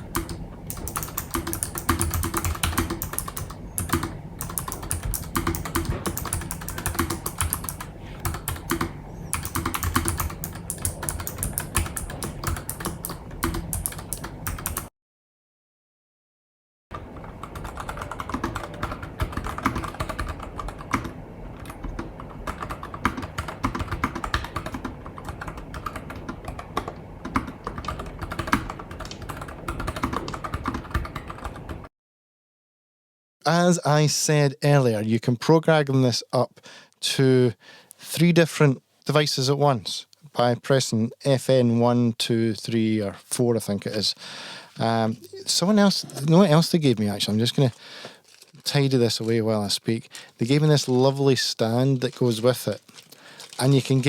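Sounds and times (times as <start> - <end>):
fast typing on mechanical keyboard: 0.0 - 14.9, 17.2 - 31.9, 50.6 - 54.0.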